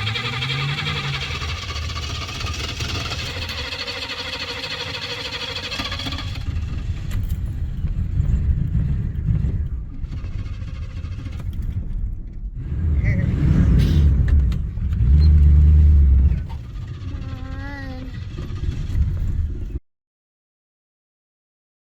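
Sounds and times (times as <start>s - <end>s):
car starter cranking: 0.0s - 7.5s
engine running with uneven rumble: 0.0s - 19.8s.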